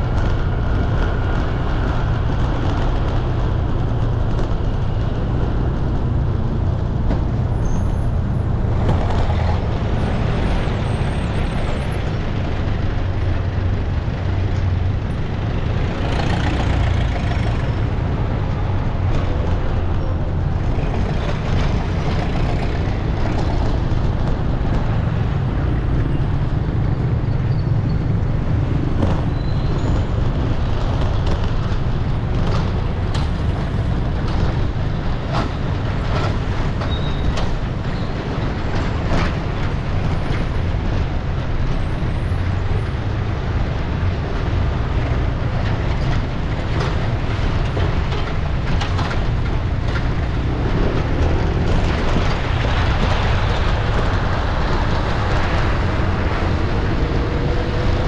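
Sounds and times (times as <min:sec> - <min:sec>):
city street traffic rumble: 0:00.0 - 0:58.0.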